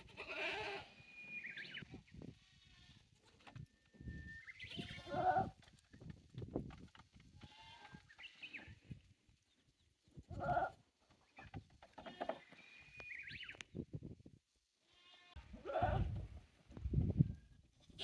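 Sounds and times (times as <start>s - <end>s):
goats bleating: 0.0s - 1.0s.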